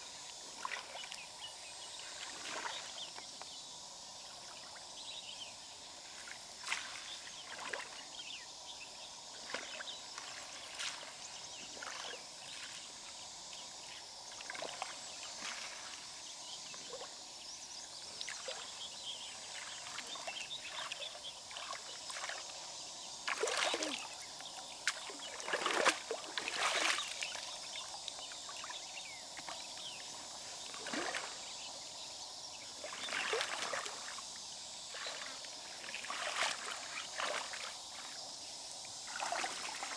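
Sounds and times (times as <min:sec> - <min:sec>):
steady outdoor hiss: 0:00.0 - 0:39.9
river water splashing: 0:14.3 - 0:16.2, 0:19.4 - 0:31.6, 0:32.6 - 0:39.9.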